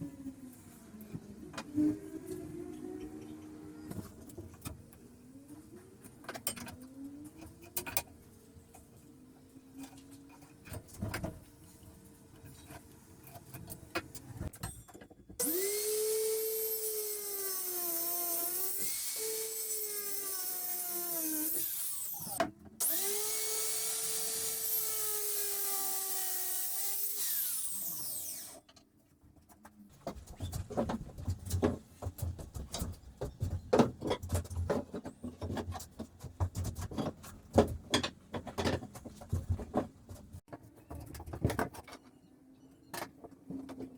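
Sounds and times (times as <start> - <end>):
power tool cutting wood: 15.4 - 28.6.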